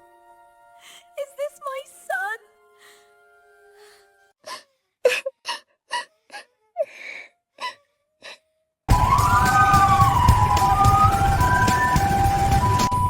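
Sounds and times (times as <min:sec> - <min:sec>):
person sobbing: 0:02.2 - 0:08.4.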